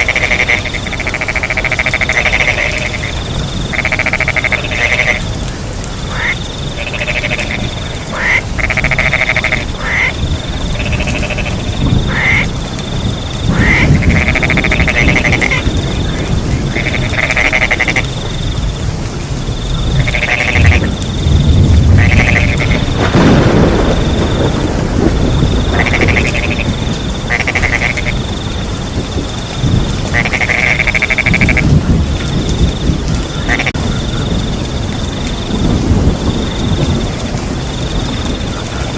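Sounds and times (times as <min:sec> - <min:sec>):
frogs croaking: 0:00.0 - 0:38.9
high cricket trill: 0:19.5 - 0:38.9.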